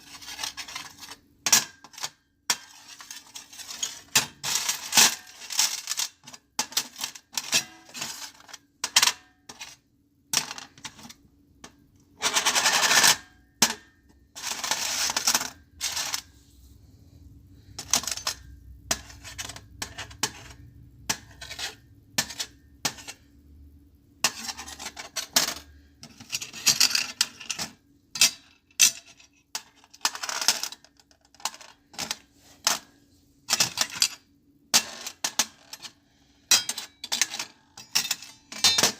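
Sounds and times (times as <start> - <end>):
metal objects clinking on a tray: 34.8 - 38.9.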